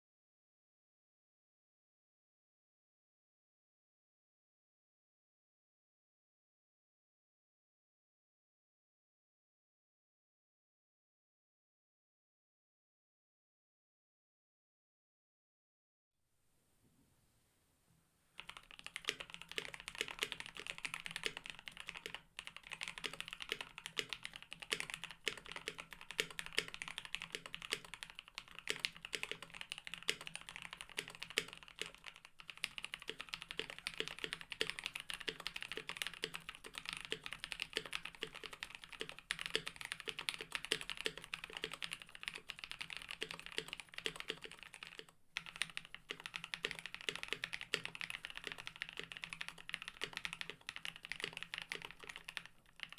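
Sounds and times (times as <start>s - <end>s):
mechanical keyboard typing: 18.4s - 52.9s.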